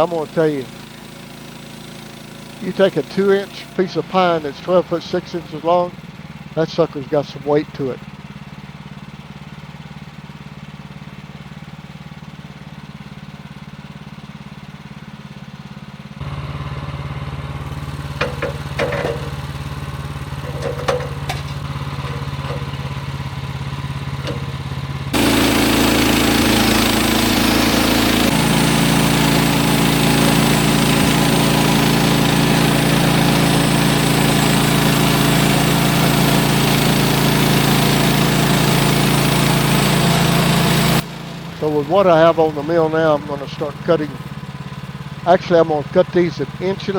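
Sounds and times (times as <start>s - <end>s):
gas engine running: 0.0s - 46.9s
clunks: 17.8s - 23.2s, 24.1s - 24.7s.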